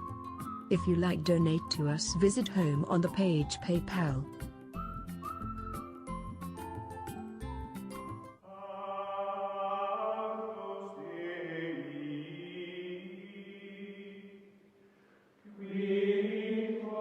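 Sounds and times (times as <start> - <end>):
held chant-like vocal notes: 8.4 - 14.6, 15.4 - 17.0.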